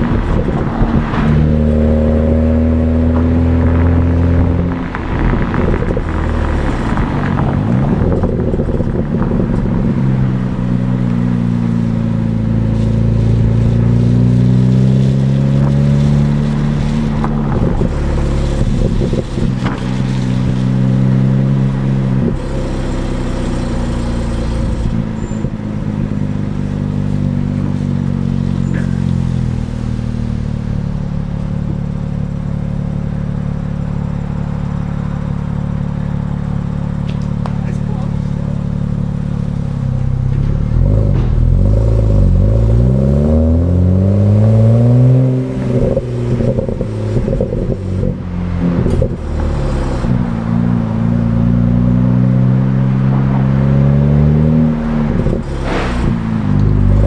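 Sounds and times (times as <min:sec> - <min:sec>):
car exhaust revving: 0:00.0 - 0:57.0
exhaust pops: 0:14.7 - 0:20.9, 0:36.0 - 0:42.7.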